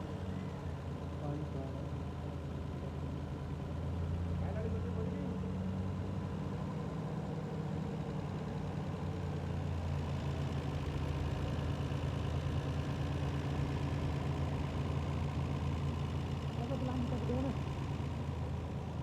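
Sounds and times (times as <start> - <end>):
car engine idling: 9.3 - 19.0.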